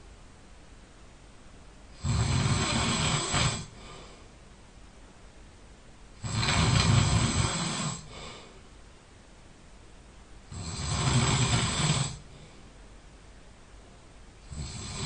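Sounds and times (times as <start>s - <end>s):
quiet breathing: 1.9s - 5.2s, 6.2s - 9.4s, 10.4s - 15.0s
person snoring loudly: 2.0s - 3.8s, 6.2s - 8.2s, 10.5s - 12.3s, 14.4s - 15.0s.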